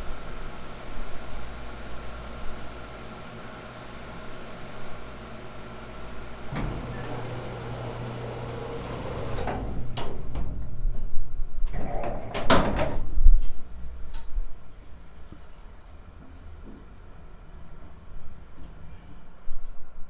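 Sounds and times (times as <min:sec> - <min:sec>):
elevator machinery humming: 0:00.1 - 0:14.7
elevator door rattling open: 0:06.4 - 0:13.8.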